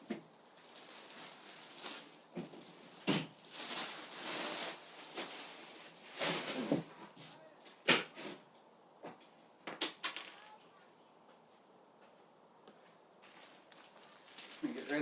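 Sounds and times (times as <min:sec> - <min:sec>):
plastic wrapping crinkling: 0:00.0 - 0:08.4, 0:13.2 - 0:15.0.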